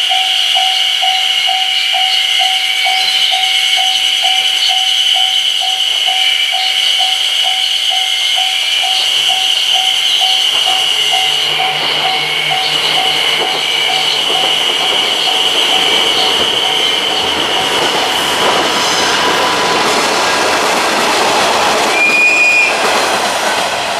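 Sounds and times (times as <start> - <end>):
level-crossing warning bell ringing: 0.0 - 18.6
cicadas chorus: 0.0 - 19.9
train rumble: 0.0 - 23.9.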